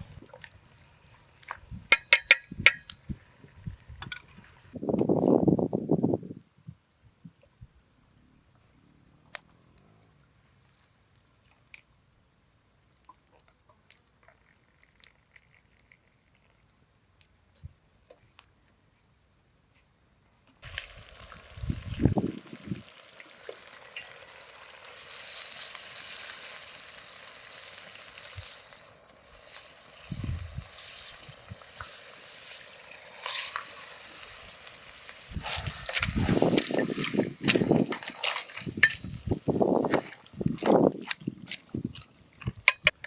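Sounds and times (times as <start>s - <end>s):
food sizzling in hot fat: 20.6s - 41.7s.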